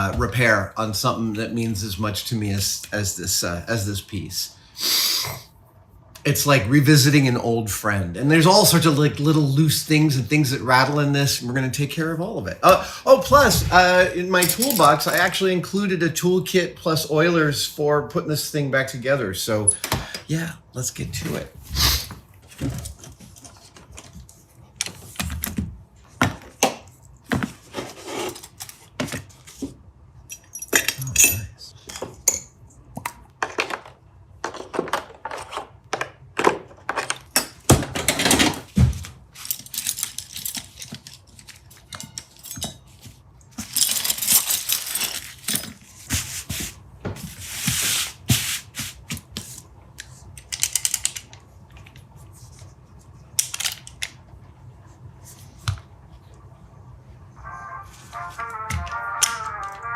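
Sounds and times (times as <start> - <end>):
metal parts clinking on workbench: 14.3 - 15.4, 30.3 - 32.5, 43.6 - 45.8.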